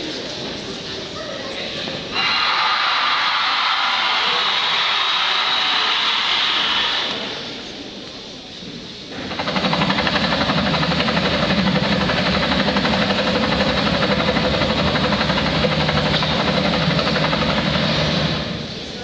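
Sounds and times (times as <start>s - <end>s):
motor running with pulsing beat: 9.2s - 18.7s.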